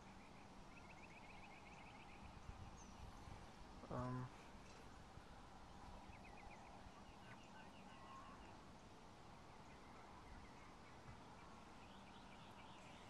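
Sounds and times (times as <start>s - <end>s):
faint bird chirping: 0.0s - 13.0s.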